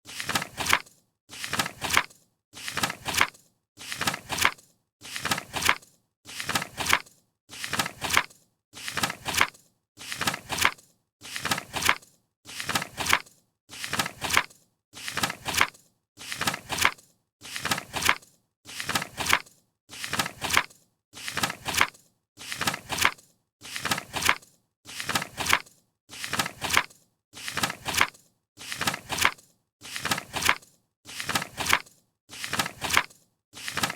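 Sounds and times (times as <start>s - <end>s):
paper page turning: 0.1s - 33.9s.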